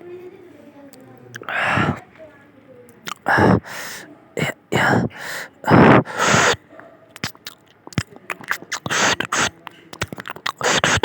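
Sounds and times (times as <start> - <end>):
wet chewing and smacking: 3.0 - 3.3, 7.1 - 11.0.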